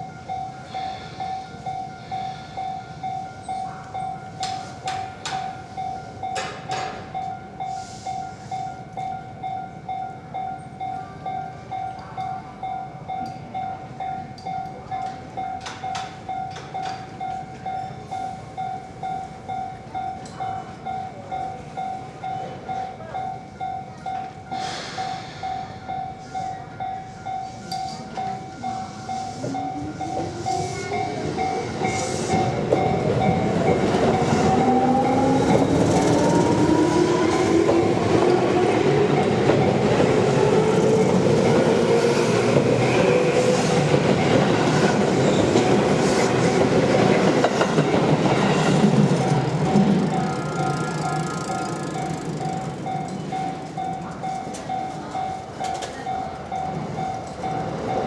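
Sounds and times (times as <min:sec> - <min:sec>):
level-crossing warning bell: 0:00.0 - 0:58.0
passing train: 0:00.0 - 0:58.0
electric train motor whine: 0:48.7 - 0:53.3.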